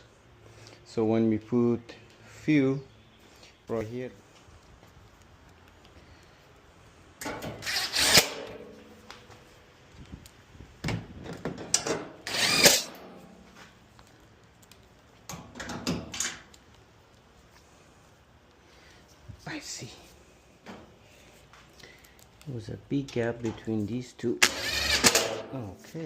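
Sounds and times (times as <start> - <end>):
power drill driving screws into metal: 7.2 - 8.6, 11.8 - 13.2, 24.4 - 25.5.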